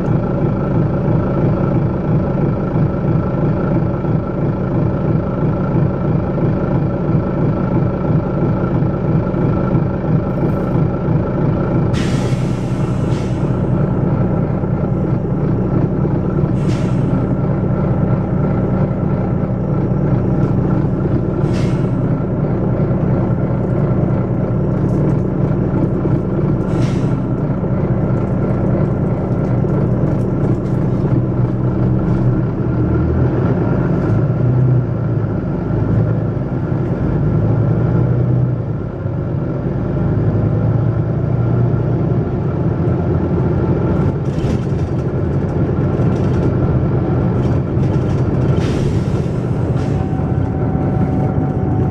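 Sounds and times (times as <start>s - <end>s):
bus diesel engine running: 0.0s - 51.9s
air hisses from bus: 12.0s - 13.7s, 16.5s - 17.2s, 21.4s - 22.0s, 26.7s - 27.3s.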